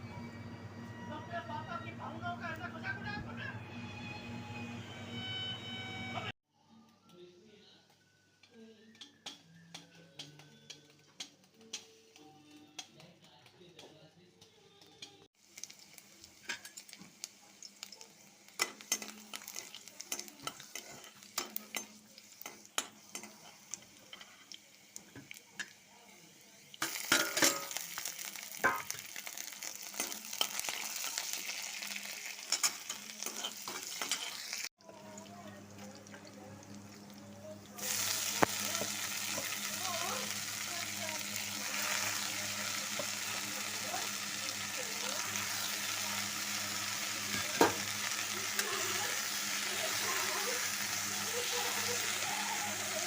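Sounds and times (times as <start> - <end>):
food sizzling: 7.9 - 53.0
spoon clinking on a pan: 8.9 - 13.0, 18.5 - 24.5, 26.8 - 27.8, 28.6 - 29.0, 29.9 - 31.1, 32.4 - 34.4.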